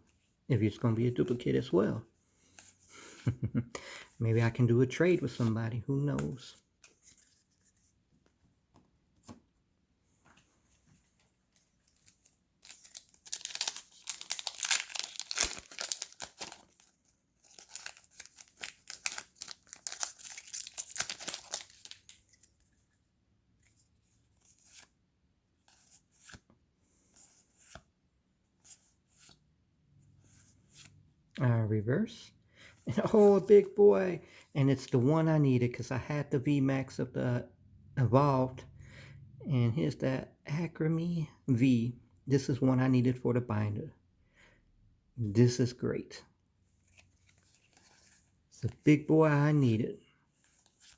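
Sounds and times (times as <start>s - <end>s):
foil wrapper tearing and crinkling: 12.6s - 16.8s, 17.5s - 22.2s.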